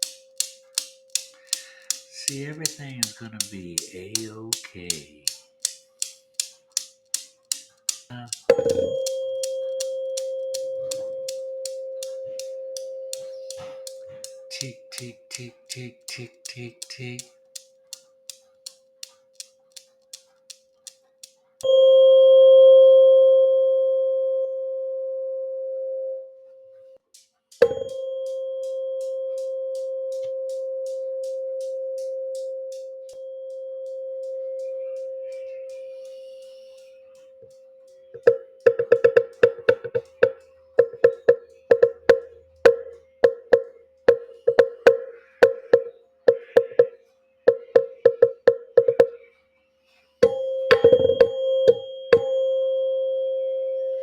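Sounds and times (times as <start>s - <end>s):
sharp ticks: 0.0s - 21.7s, 27.1s - 33.2s, 34.6s - 49.3s
wood block percussion taps: 0.0s - 21.8s, 27.5s - 33.2s, 37.4s - 49.3s, 50.2s - 52.4s
struck ringing tone: 8.5s - 14.2s, 27.6s - 35.9s, 50.2s - 54.0s
faint steady tone: 8.5s - 14.6s, 21.6s - 27.0s, 27.6s - 38.4s, 50.2s - 54.0s.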